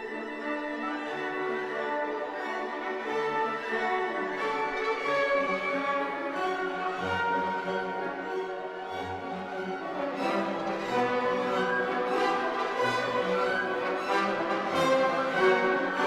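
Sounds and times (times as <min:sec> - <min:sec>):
orchestral string music: 0:00.0 - 0:16.0.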